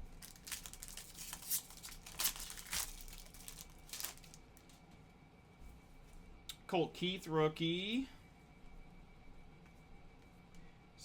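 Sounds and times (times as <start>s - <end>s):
foil wrapper tearing and crinkling: 0.0s - 4.4s.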